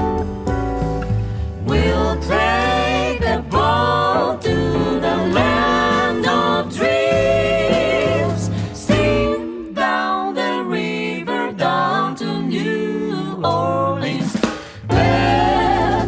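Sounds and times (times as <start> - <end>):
low bass line: 0.0 - 9.4, 14.9 - 16.0
vocal group singing in harmony: 1.2 - 16.0.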